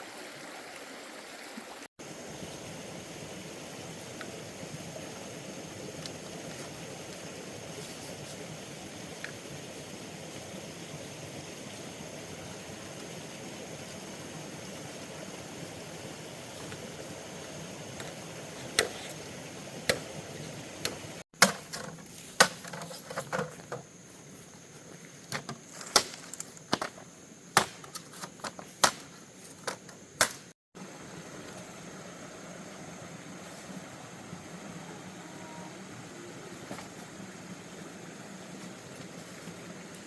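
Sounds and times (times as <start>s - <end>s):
steady background hiss: 2.0s - 40.0s
blade chopping bamboo: 20.8s - 22.8s, 27.6s - 28.0s, 28.8s - 29.1s.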